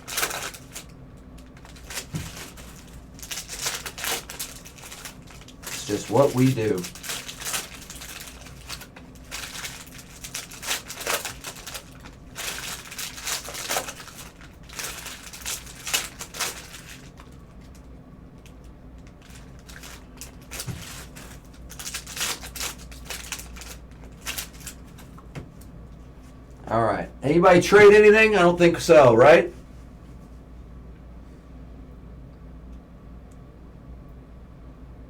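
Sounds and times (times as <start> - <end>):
cellophane packs crinkling: 0.0 - 25.2.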